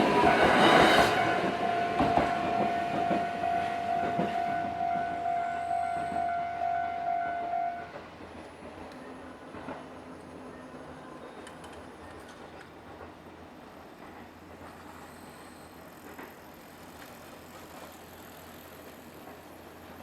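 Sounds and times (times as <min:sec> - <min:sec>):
low hum: 0:00.0 - 0:07.9.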